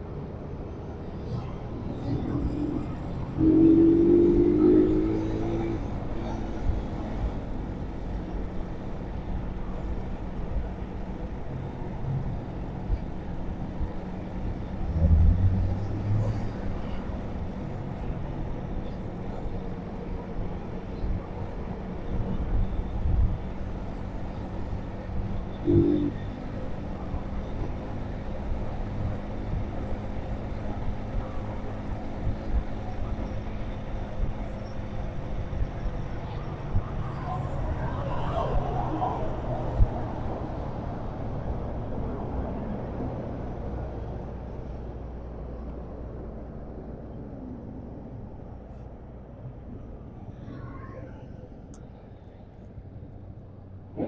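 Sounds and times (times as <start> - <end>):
rumble of passing vehicles: 0.0 - 54.0
brief pitched tone: 25.6 - 26.2.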